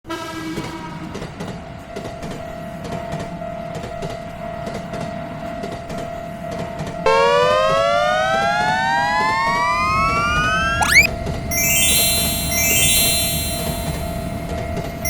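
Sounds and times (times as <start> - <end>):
steady high tone: 7.1 - 14.4.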